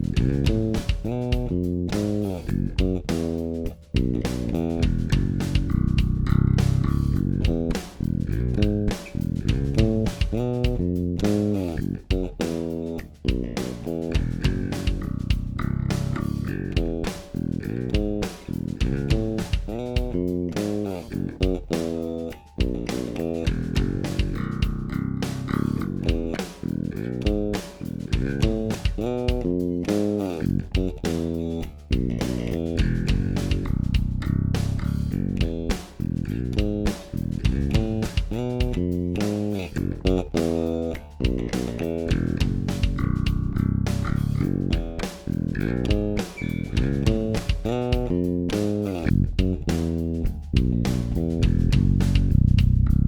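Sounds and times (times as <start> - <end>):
electric bass plucked notes: 0.0 - 53.0.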